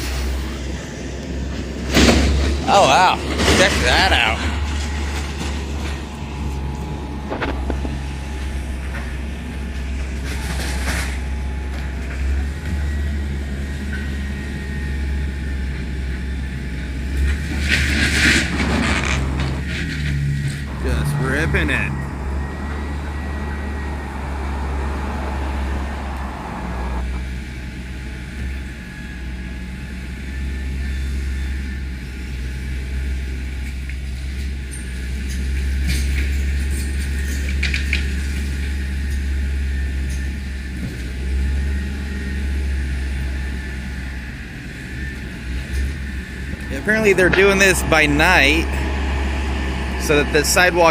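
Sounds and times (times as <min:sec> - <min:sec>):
diesel engine droning: 0:00.0 - 0:50.9
debris clattering and cracking: 0:03.2 - 0:08.1.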